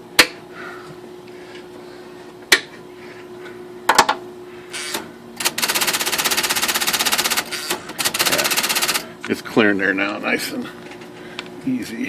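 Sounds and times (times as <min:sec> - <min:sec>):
typewriter motor humming: 0:04.8 - 0:09.1
typewriter keystrokes: 0:08.0 - 0:09.0.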